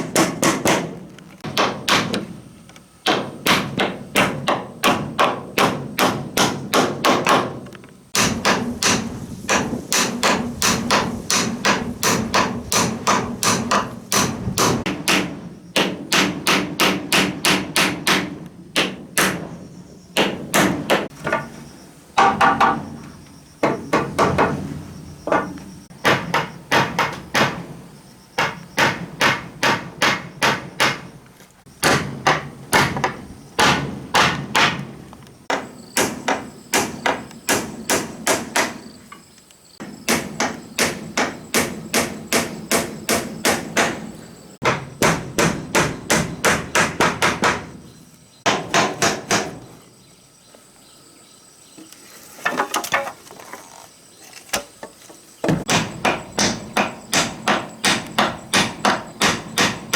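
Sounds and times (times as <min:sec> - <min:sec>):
hammer striking wood: 0:00.0 - 0:02.4, 0:03.0 - 0:19.6, 0:20.2 - 0:21.2, 0:22.2 - 0:22.8, 0:25.3 - 0:27.7, 0:28.4 - 0:31.1, 0:31.8 - 0:38.8, 0:39.8 - 0:44.0, 0:44.6 - 0:47.8, 0:48.5 - 0:49.6, 0:55.4 - 0:59.9.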